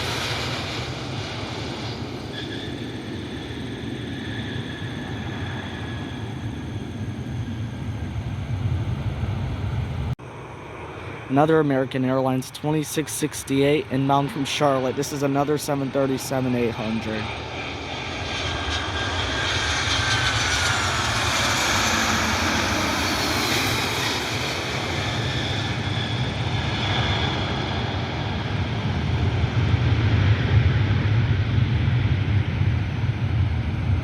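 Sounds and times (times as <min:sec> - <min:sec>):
jet engine low rumble: 0:00.0 - 0:34.0
jet engine whine: 0:00.0 - 0:34.0.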